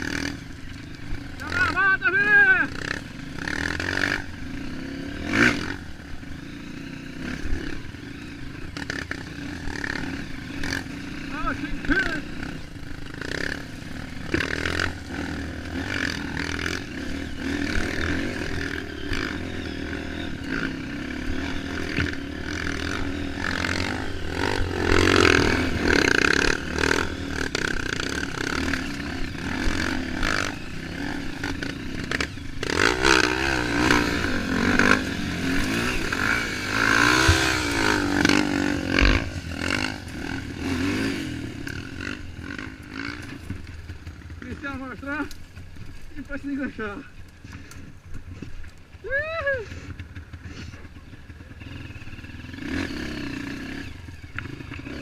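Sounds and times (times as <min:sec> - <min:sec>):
motorcycle engine revving: 0:00.0 - 0:55.0
bike clattering over rough ground: 0:12.8 - 0:16.9, 0:42.7 - 0:49.0.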